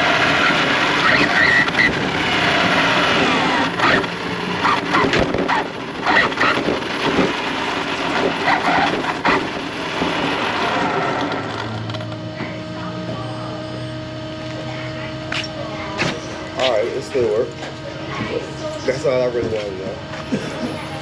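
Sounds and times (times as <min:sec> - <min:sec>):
toy car motor whining: 0:00.0 - 0:07.4.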